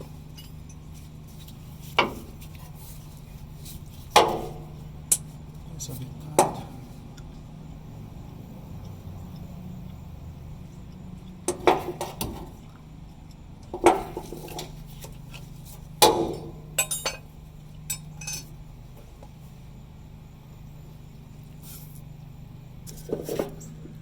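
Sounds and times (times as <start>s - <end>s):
low steady hum: 0.0s - 24.0s
hand tools clinking on metal: 16.8s - 17.3s, 17.9s - 18.6s.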